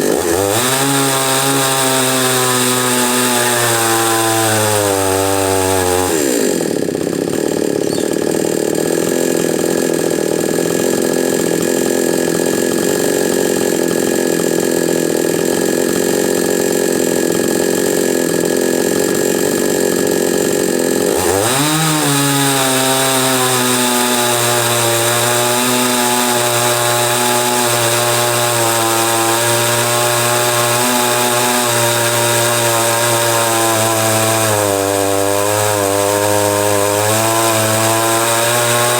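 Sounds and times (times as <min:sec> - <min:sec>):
chainsaw revving and idling: 0:00.0 - 0:38.9.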